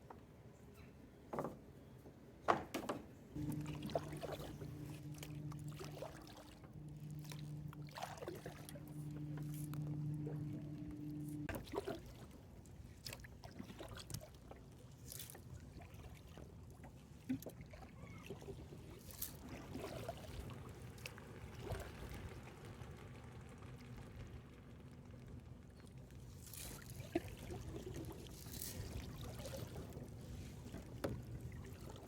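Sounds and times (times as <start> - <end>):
water swishes: 3.4 - 32.0
water trickling and lapping: 3.4 - 32.0.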